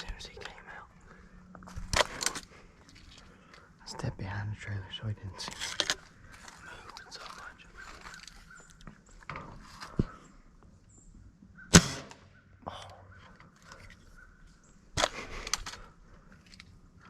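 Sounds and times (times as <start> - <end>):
clicks and rustling: 1.7 - 3.7, 5.4 - 10.2, 15.0 - 16.8
air rifle shot: 11.7 - 12.3.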